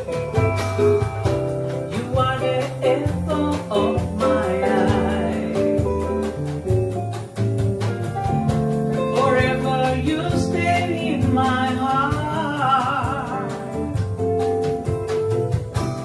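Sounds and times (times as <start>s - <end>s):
bossa nova guitar and bass: 0.0s - 16.0s
person singing wordless melody: 1.9s - 6.0s, 9.0s - 13.8s.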